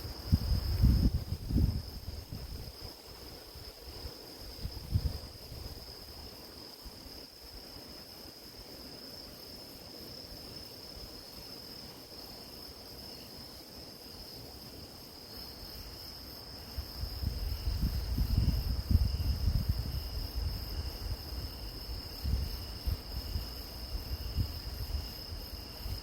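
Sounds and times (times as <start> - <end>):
wind rumble on microphone: 0.0 - 6.3, 16.6 - 26.0
crickets chirring: 0.0 - 26.0.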